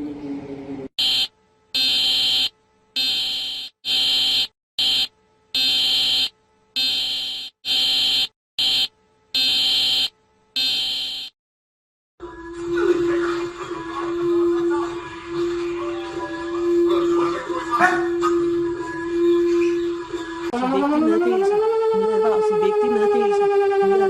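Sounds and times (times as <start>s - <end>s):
alarm buzzer beeps: 1.0s - 11.4s
low falling tone: 20.5s - 24.0s.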